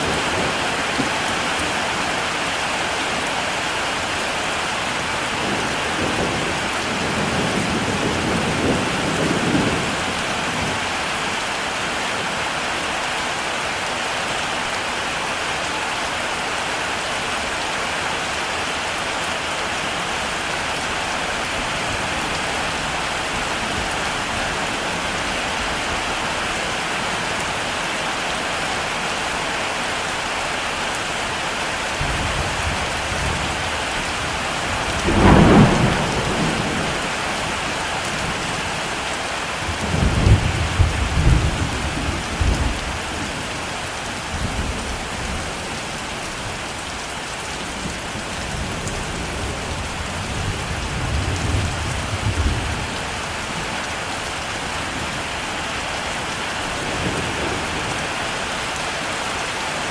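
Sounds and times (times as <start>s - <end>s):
heavy rain: 0.0s - 59.9s
rolling thunder rumbles: 5.3s - 10.9s, 32.0s - 38.7s
thunder clap: 34.8s - 37.1s.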